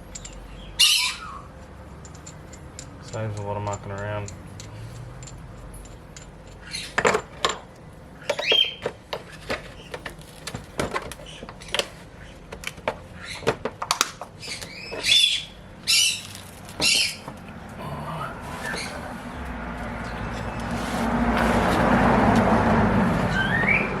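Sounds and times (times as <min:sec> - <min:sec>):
metal parts clicking and clattering: 0:00.0 - 0:15.3
short scraping sounds: 0:18.4 - 0:22.0.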